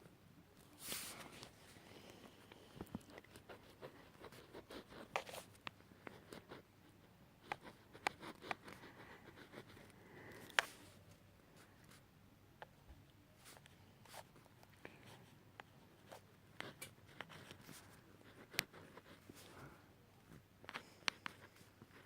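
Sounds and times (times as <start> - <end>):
pen writing on paper: 7.4 - 9.9.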